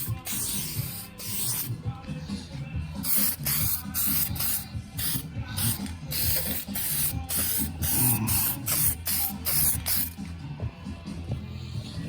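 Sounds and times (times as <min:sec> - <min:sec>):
aerosol spray hissing bursts: 0:00.0 - 0:01.7, 0:03.0 - 0:10.2.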